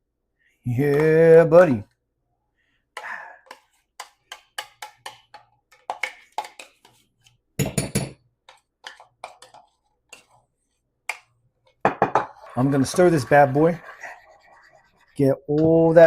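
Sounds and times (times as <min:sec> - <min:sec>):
spoon knocking against cup and bowl: 0:07.6 - 0:09.6.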